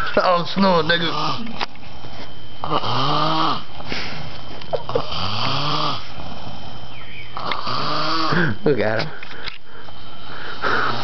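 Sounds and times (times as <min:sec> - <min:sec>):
man snoring: 0:01.0 - 0:01.5, 0:02.6 - 0:03.7, 0:04.9 - 0:06.7, 0:07.4 - 0:08.6, 0:10.0 - 0:11.0
breathy exhale: 0:09.3 - 0:11.0.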